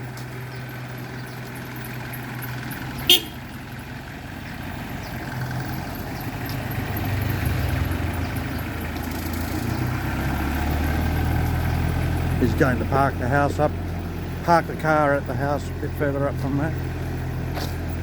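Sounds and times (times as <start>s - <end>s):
car engine running: 0.0s - 18.0s
short sharp car horn toot: 3.1s - 3.4s.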